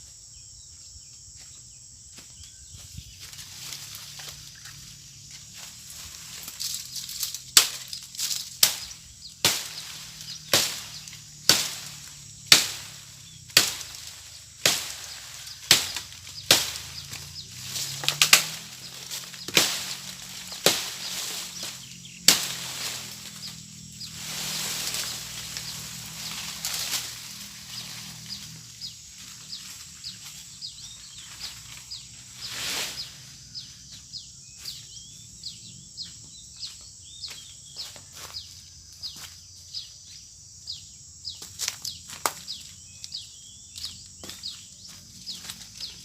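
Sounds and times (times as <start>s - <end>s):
leaves rustling: 2.5s - 33.8s
blade chopping into branch: 7.2s - 23.6s.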